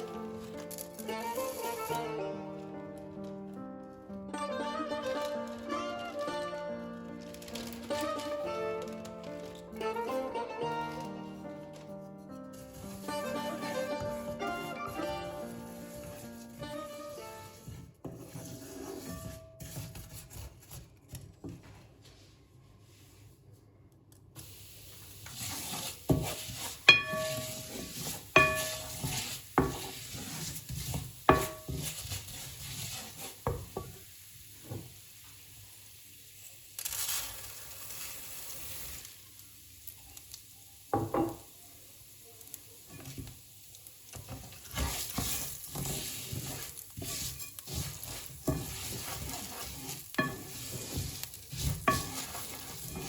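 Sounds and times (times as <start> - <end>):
food sizzling in a pan: 0.0 - 2.2, 12.5 - 17.9, 24.4 - 53.0
metal utensil clinking on cookware: 26.9 - 29.2.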